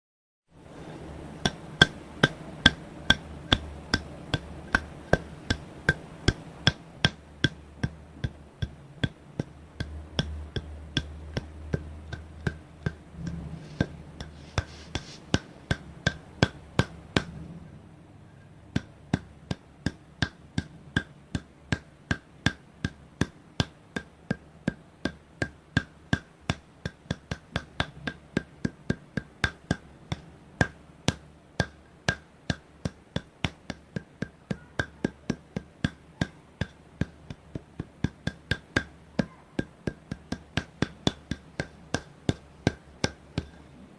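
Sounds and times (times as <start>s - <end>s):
low hum: 0.6s - 19.8s.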